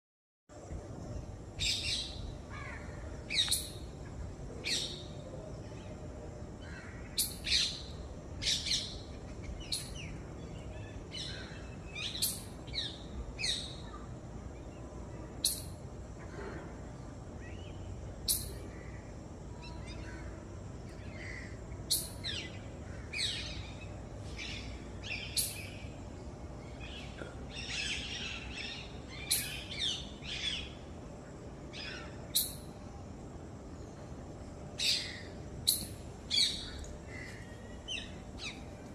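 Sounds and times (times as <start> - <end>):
low background hum: 0.5 - 38.9
birds chirping: 0.7 - 15.8, 21.0 - 30.9, 33.7 - 38.9.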